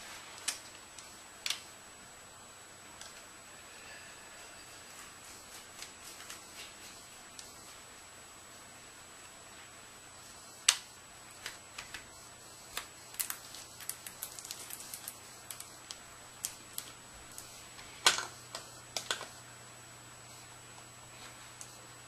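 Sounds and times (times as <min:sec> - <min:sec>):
laptop parts clicking: 0:12.8 - 0:16.9.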